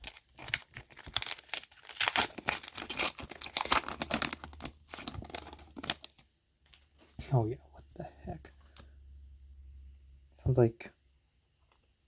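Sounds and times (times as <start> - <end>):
wrapper tearing and crinkling: 0.0 - 6.2.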